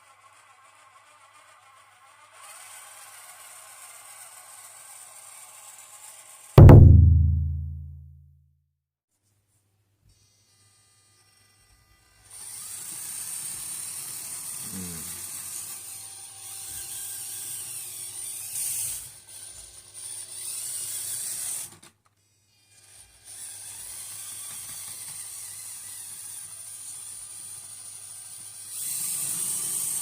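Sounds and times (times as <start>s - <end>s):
small electric motor whirring: 22.5s - 30.0s.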